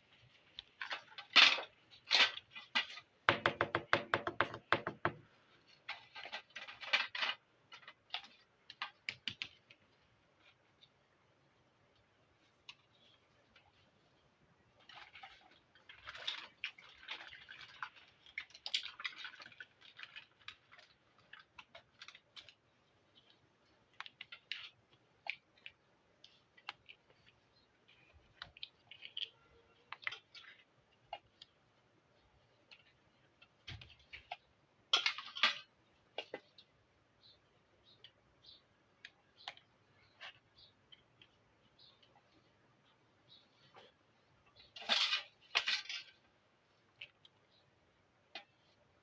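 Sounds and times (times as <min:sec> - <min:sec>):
rustling and scraping: 0:00.0 - 0:03.3, 0:05.2 - 0:11.1, 0:11.9 - 0:31.6, 0:39.2 - 0:47.5.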